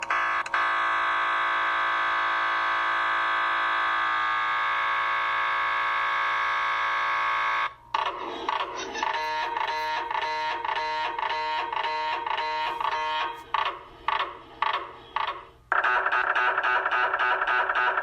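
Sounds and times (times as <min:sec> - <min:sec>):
mri scanner buzzing: 0:00.0 - 0:18.0.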